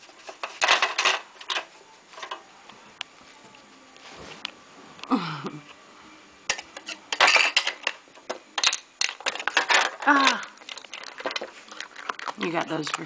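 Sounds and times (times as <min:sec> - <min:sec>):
plastic puzzle pieces clattering: 0:00.2 - 0:02.4, 0:06.8 - 0:13.0.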